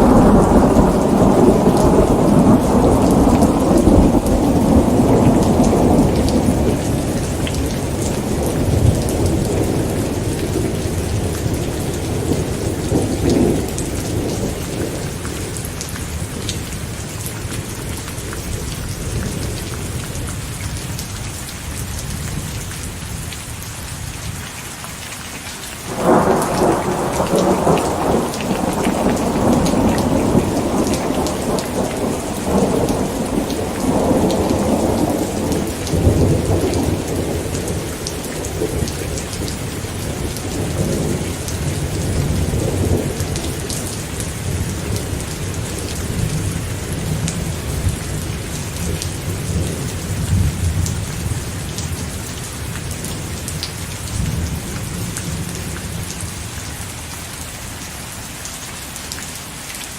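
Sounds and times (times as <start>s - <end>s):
thunderclap: 0.0s - 15.5s, 25.9s - 48.0s
thunder rumbling: 0.0s - 18.0s, 25.9s - 56.3s
heavy rain: 0.0s - 59.9s.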